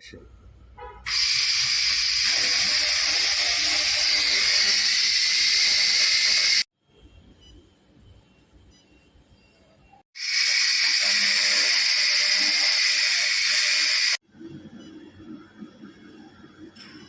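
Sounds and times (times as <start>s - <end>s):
laser cleaning gun hissing: 1.1s - 6.7s, 10.2s - 14.2s.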